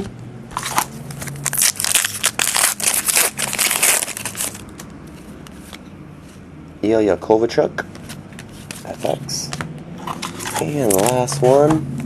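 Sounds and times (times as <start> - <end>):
foil wrapper crinkling: 1.4 - 4.6.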